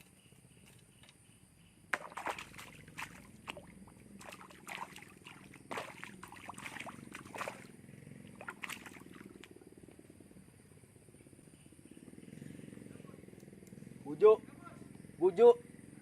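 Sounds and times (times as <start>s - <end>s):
faint background hum: 0.0s - 16.0s
water splashing and sloshing: 1.9s - 9.6s.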